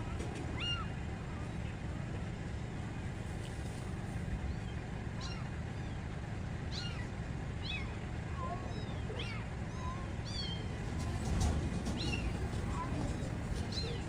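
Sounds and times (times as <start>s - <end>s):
steady low rumble: 0.0s - 14.0s
kittens mewing: 0.5s - 1.6s, 4.6s - 14.0s.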